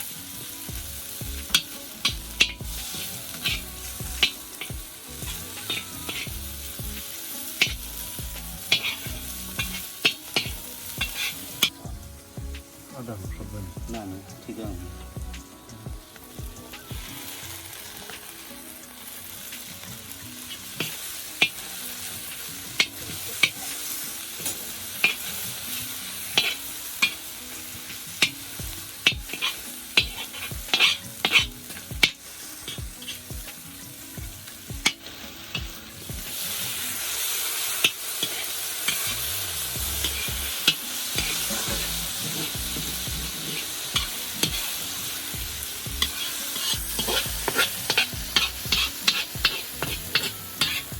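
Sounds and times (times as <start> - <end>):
food sizzling in a pan: 0.0 - 50.9
utensil scraping a pan: 1.4 - 11.8, 29.0 - 33.6, 37.8 - 50.9.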